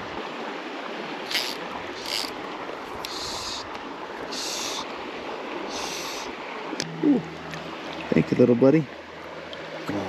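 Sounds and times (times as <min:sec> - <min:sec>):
creek running: 0:00.0 - 0:10.0
high hissing swishes: 0:01.2 - 0:02.4, 0:03.0 - 0:04.9, 0:05.7 - 0:06.4.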